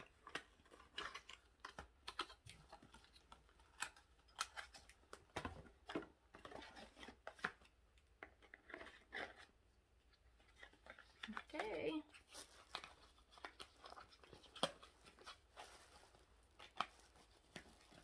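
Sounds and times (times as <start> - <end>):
plastic items clicking and tapping: 0.0 - 8.6.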